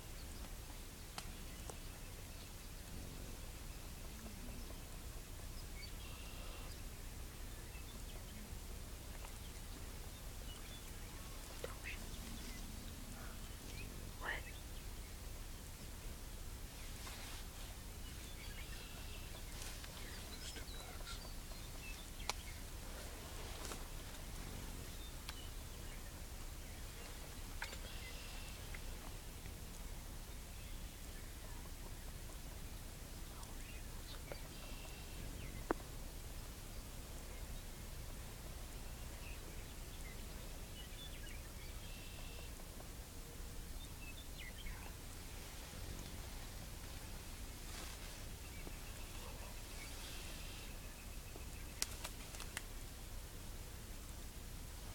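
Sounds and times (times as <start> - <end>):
steady low rumble: 0.0 - 54.9
faint high bird chirps: 18.2 - 22.5.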